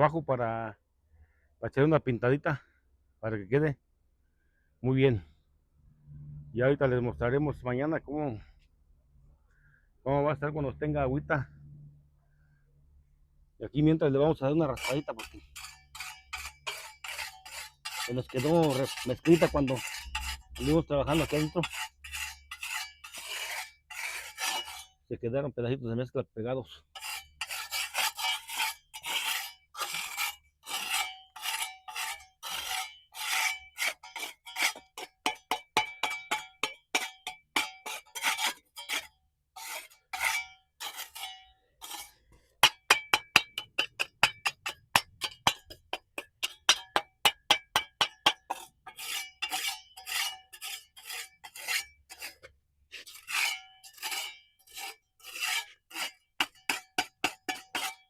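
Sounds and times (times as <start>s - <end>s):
scraping mortar off concrete: 14.7s - 25.0s, 26.8s - 58.0s.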